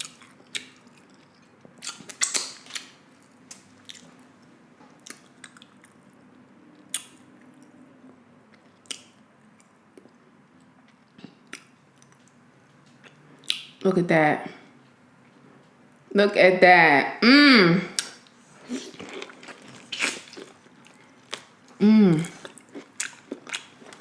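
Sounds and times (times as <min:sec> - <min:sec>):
person chewing food: 0:00.0 - 0:06.2, 0:18.0 - 0:24.0.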